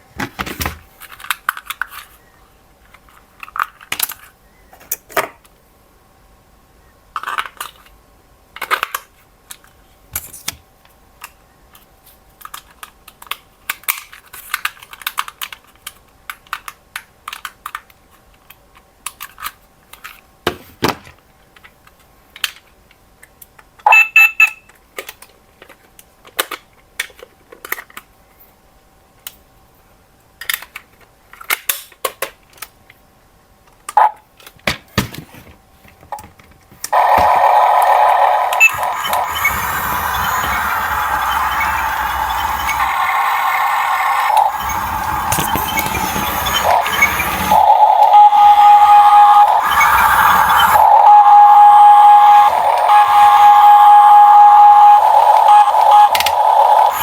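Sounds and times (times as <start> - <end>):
plastic toys clicking and clattering: 12.4 - 20.2, 25.0 - 28.1, 30.4 - 33.0
short electronic beep: 23.9 - 24.6, 37.0 - 57.0.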